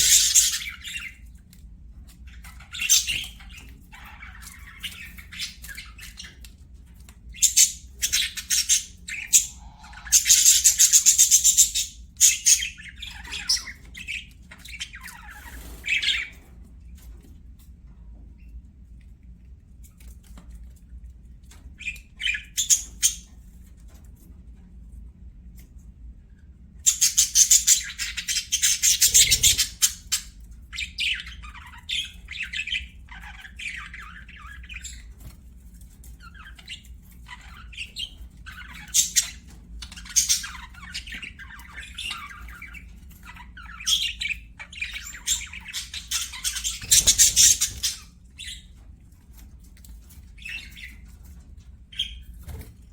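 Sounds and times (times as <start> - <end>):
budgerigars chattering: 0.0 - 1.2, 7.4 - 16.4, 26.9 - 35.1, 36.3 - 48.7.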